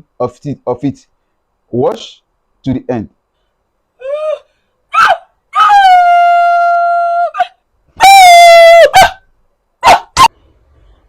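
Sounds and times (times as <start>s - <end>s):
dog yelping: 4.0s - 6.1s, 7.3s - 9.2s, 9.8s - 10.3s
dog howling: 4.0s - 9.2s.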